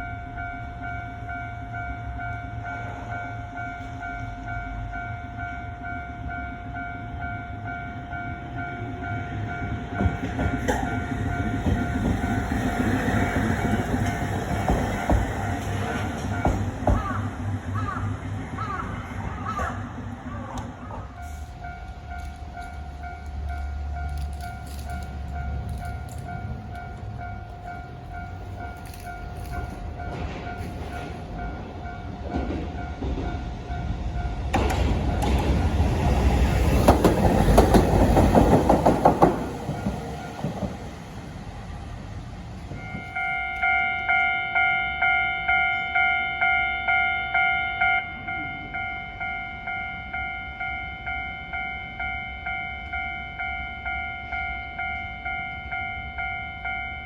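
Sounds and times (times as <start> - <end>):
level-crossing alarm dinging: 0.0 - 42.0, 42.6 - 57.0
streetcar wheels clattering: 9.4 - 44.2.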